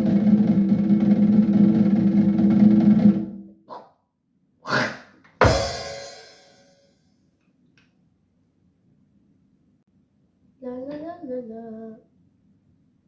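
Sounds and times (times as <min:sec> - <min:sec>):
drum roll: 0:00.0 - 0:03.4, 0:05.4 - 0:06.8
cymbal crash: 0:05.4 - 0:06.9.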